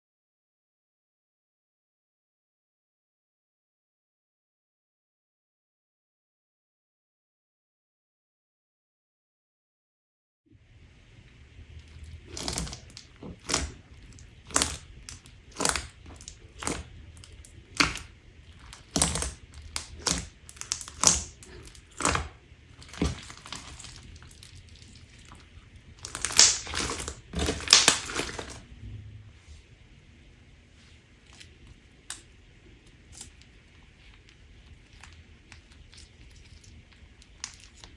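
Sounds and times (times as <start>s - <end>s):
crunchy slime crackling: 11.1s - 28.7s, 31.0s - 37.9s.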